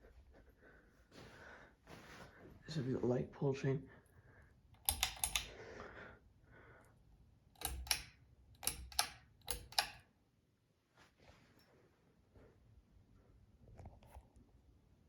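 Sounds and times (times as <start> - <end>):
pull-chain switch double click: 4.8 - 5.5, 7.6 - 10.0.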